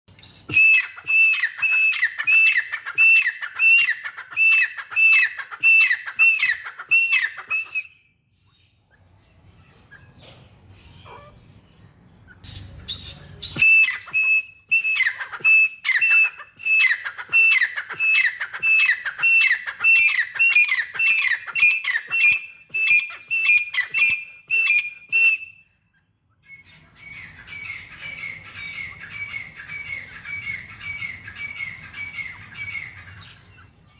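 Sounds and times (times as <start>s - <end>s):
francolin whistled calls: 0.2s - 8.2s, 12.4s - 25.9s.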